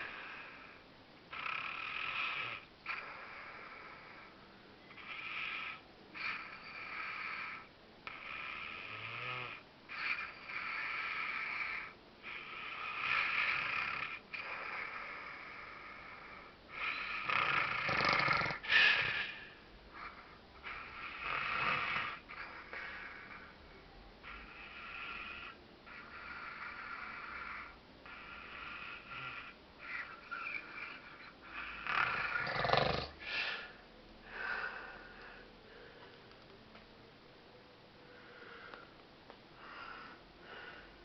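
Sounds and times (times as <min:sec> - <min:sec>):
man snoring: 0:00.0 - 0:04.3, 0:05.0 - 0:23.5, 0:24.2 - 0:33.7.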